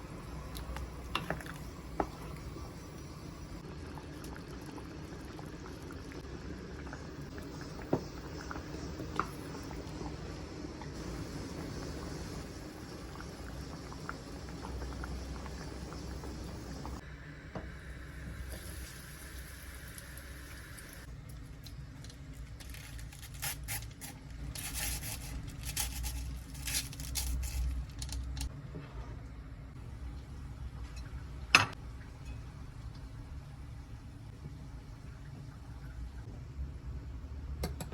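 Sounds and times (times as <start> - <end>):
food hissing in a pan: 7.2 - 17.0.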